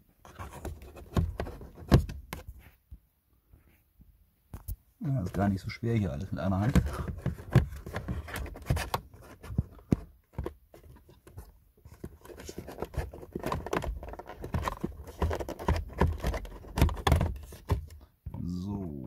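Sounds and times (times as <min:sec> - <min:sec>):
plastic parts clicking and scraping: 0:00.2 - 0:02.6, 0:06.5 - 0:18.0.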